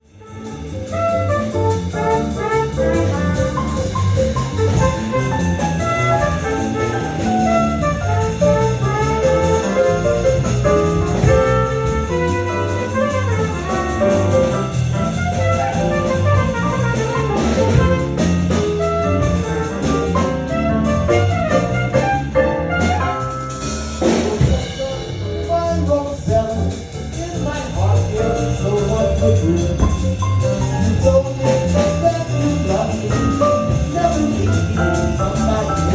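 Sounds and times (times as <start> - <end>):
jazz band playing live: 0.0 - 35.9
trumpet: 0.1 - 26.6.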